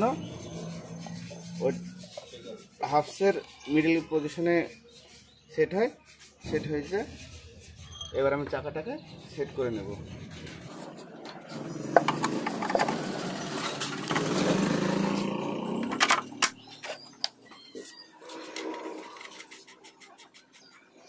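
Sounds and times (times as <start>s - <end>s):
metal parts clinking and scraping: 10.3s - 17.4s.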